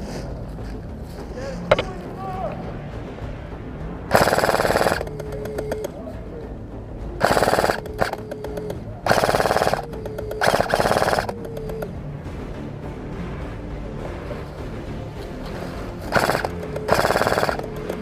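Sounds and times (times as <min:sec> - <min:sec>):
airsoft gun full-auto bursts: 0:04.1 - 0:06.0, 0:07.2 - 0:11.9, 0:16.1 - 0:18.0.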